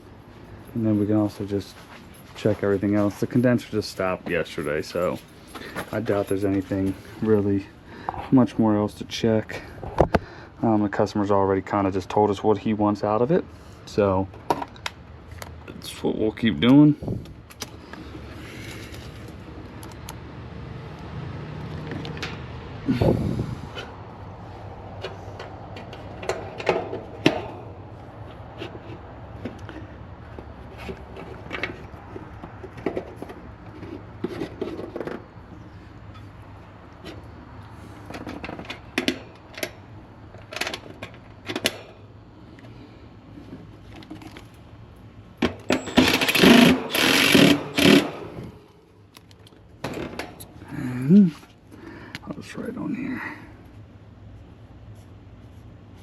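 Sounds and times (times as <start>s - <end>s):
rough scraping and rustling: 17.8s - 19.5s.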